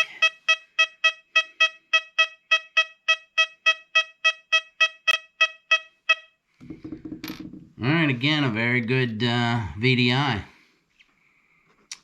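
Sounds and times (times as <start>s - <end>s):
metal detector short beeps: 0.0s - 6.3s.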